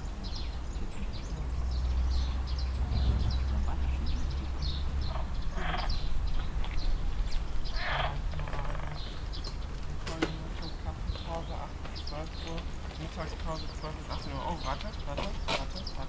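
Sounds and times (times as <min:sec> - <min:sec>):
frogs croaking: 0:01.2 - 0:09.3
low rumble: 0:02.4 - 0:07.8.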